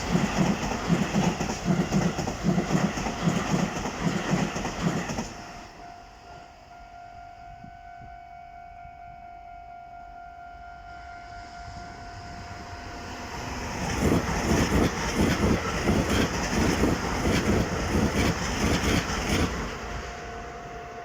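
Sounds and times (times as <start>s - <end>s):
train wheels clattering over rails: 0.0s - 5.4s, 13.7s - 20.0s
level crossing warning tone: 5.6s - 21.0s.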